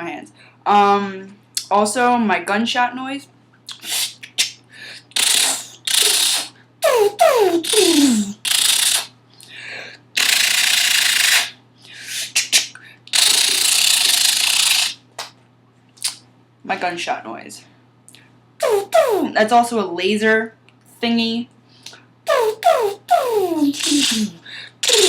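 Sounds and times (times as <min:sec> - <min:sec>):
person imitating gunshots: 0:05.2 - 0:09.1, 0:18.6 - 0:19.3, 0:22.3 - 0:25.0.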